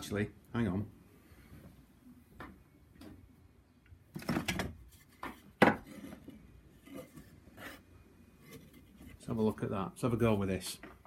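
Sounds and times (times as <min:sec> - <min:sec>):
wood pieces knocking and clattering: 0:04.1 - 0:06.2.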